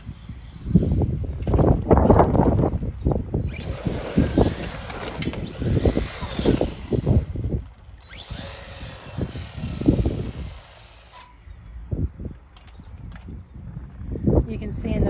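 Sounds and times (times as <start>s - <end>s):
remote-control truck motor whining: 0.0s - 1.3s, 3.3s - 11.4s
wind buffeting microphone: 0.0s - 15.0s.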